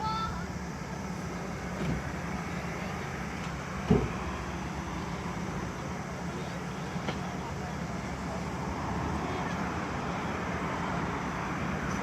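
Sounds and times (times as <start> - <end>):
road traffic rumble: 0.0 - 12.0
low thump: 3.8 - 4.2.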